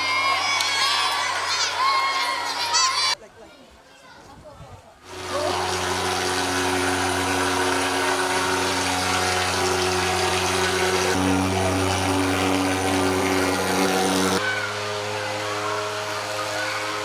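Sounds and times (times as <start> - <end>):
fogging machine engine droning: 5.1 - 17.0.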